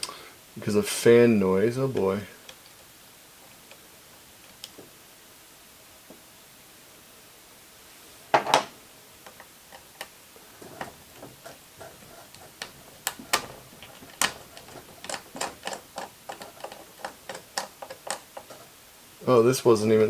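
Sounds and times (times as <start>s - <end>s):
screwdriver clicking on plastic: 10.7s - 18.7s.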